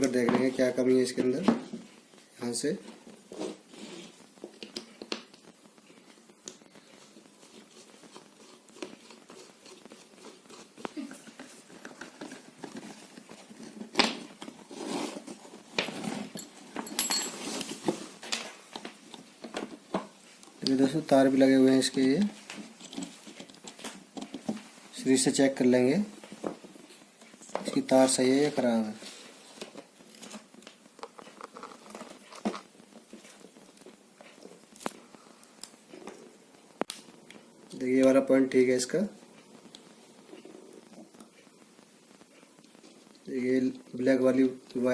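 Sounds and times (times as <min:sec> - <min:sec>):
electrical wires clicking and rustling: 0:00.0 - 0:44.9
handling clicks knocks and scrapes: 0:22.4 - 0:24.7.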